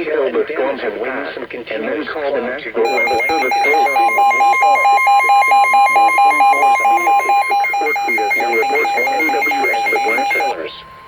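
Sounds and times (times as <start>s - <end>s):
synthesized voice speaking: 2.9s - 10.5s
electronic alarm beeping: 2.9s - 10.6s
faint steady tone: 2.9s - 10.6s.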